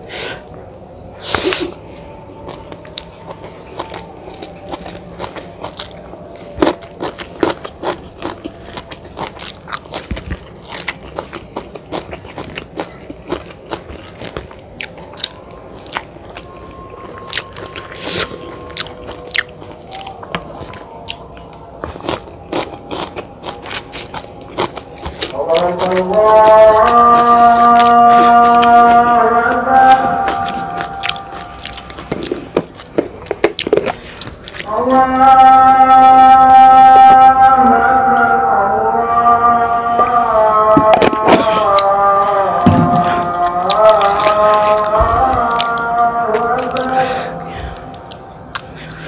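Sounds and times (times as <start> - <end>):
chewing and biting: 2.5 - 34.7, 43.3 - 49.0.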